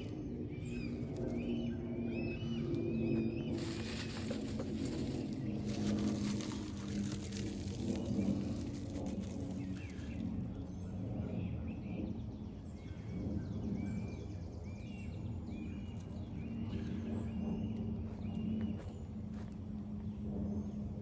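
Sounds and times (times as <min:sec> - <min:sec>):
small birds chirping: 0:00.0 - 0:10.7
low background rumble: 0:00.0 - 0:21.0.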